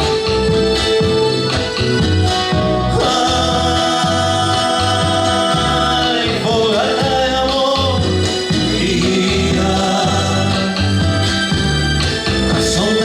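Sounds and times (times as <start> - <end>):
guitar and piano: 0.0 - 13.0
low bass notes: 0.0 - 13.0
man singing: 2.8 - 11.5, 12.5 - 13.0.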